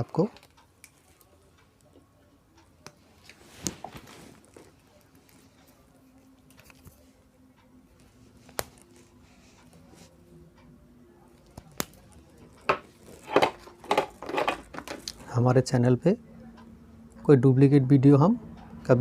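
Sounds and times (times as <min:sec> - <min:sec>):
faint steady hum: 0:00.0 - 0:19.0
small parts clicking and knocking: 0:12.6 - 0:15.2.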